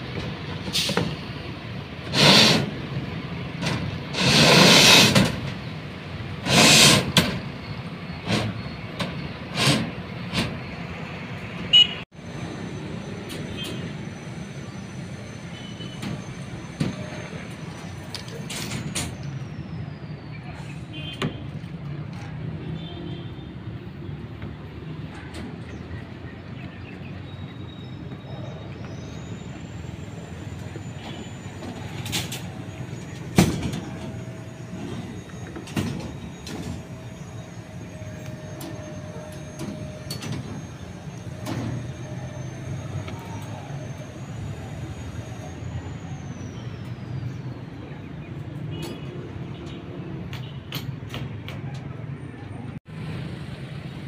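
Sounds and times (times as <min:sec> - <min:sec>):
knocks and clanks: 0:31.6 - 0:37.0, 0:48.8 - 0:52.0.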